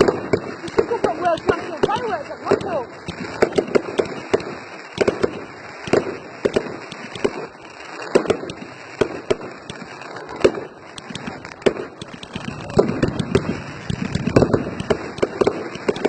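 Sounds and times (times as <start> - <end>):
firework crackle: 0.0 - 16.0
firework shells exploding: 0.0 - 16.0.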